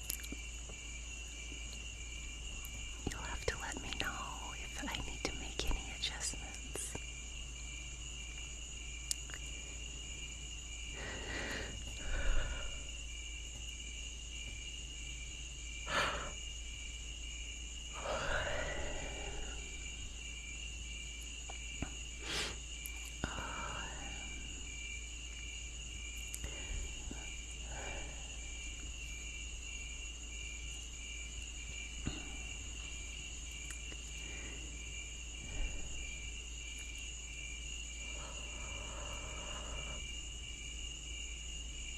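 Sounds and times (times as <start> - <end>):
crickets chirping: 0.0 - 41.9.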